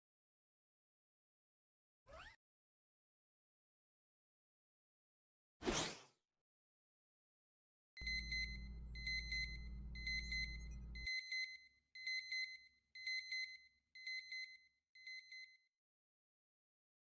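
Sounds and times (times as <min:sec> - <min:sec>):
low hum: 0:08.0 - 0:11.1
electronic alarm beeping: 0:08.0 - 0:15.7.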